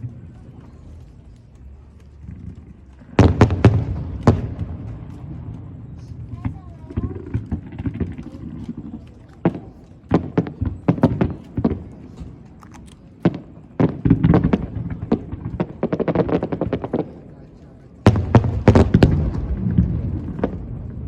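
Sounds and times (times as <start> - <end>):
fireworks bangs and crackling: 0.0 - 21.0.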